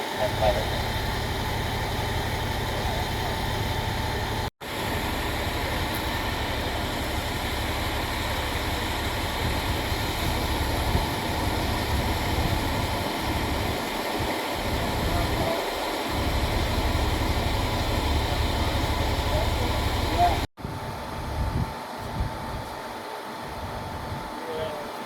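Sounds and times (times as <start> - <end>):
wind buffeting microphone: 0.2 - 24.4.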